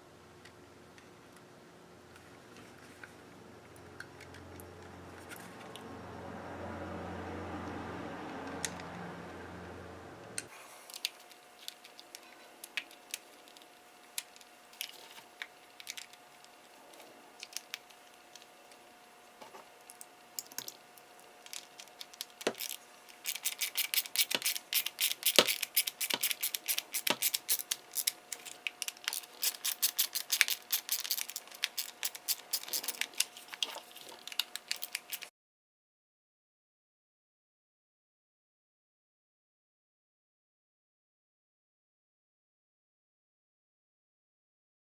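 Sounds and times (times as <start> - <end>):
rapid clicking of screws driven: 21.5 - 33.6.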